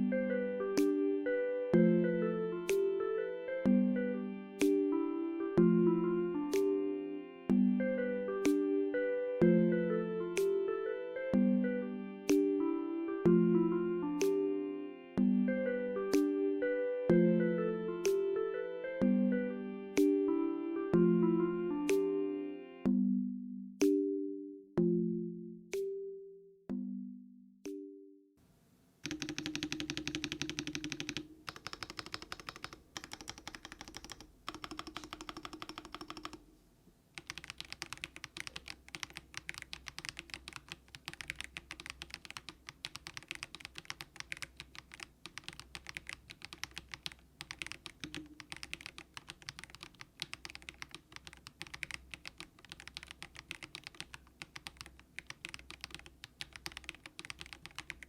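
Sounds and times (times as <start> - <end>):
typing on mechanical keyboard: 29.0 - 36.4, 37.2 - 58.0.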